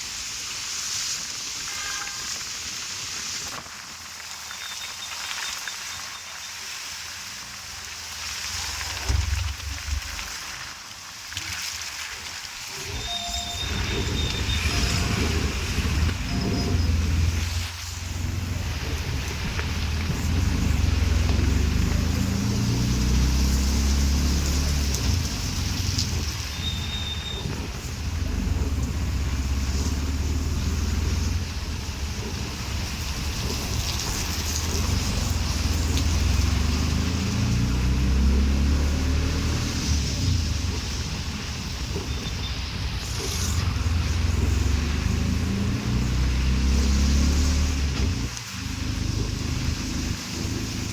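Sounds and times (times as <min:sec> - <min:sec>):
heavy rain hissing: 0:00.0 - 0:50.9
vehicle passing on wet road: 0:07.1 - 0:50.9
low rumble: 0:12.6 - 0:38.2.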